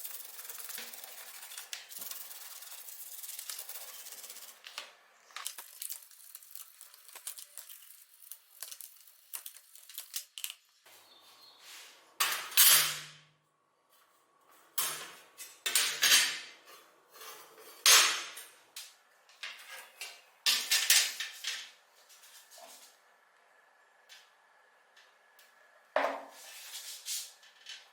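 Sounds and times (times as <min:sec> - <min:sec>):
small hard objects clattering: 0:05.3 - 0:10.6.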